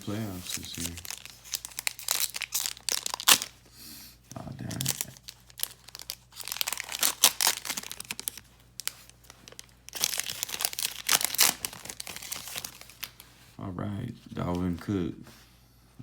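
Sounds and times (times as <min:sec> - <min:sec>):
foil wrapper crinkling and tearing: 0:00.0 - 0:03.6, 0:04.3 - 0:13.4.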